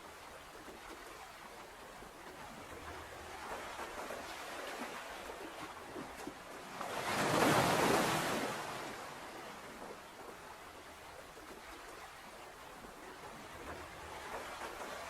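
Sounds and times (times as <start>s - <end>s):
steady surf: 2.4s - 15.0s
ocean wave washing in: 6.8s - 9.6s.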